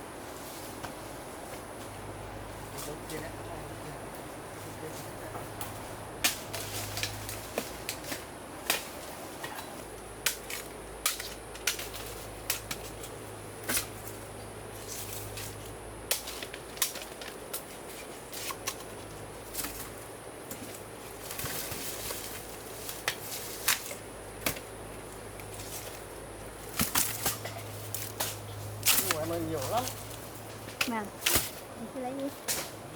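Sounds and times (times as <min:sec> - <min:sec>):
bamboo snapping: 0:05.6 - 0:09.0, 0:10.2 - 0:14.1, 0:15.1 - 0:17.7, 0:19.5 - 0:26.0, 0:26.6 - 0:31.6
plant material rustling: 0:20.6 - 0:32.9.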